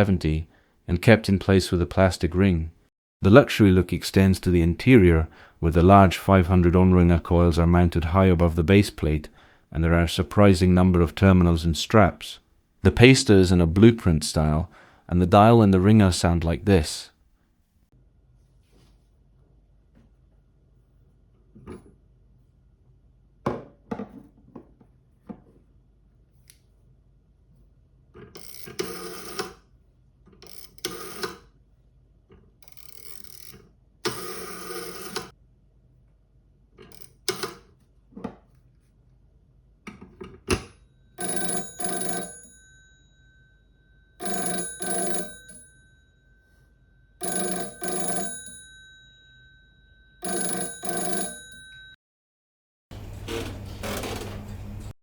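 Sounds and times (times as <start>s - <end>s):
telephone rotary dial running back: 28.4s - 29.6s, 30.4s - 31.4s, 32.6s - 35.3s, 41.2s - 42.6s, 44.2s - 45.7s, 47.2s - 48.9s, 50.2s - 51.8s
telephone bell ringing: 28.8s - 29.4s, 34.1s - 35.3s, 41.2s - 52.0s.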